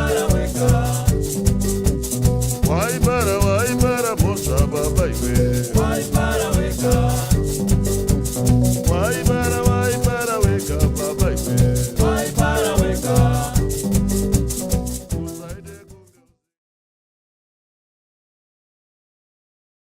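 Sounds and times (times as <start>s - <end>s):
song with singing over fast beat: 0.0s - 1.6s, 2.6s - 8.0s, 8.8s - 14.2s, 15.1s - 16.2s.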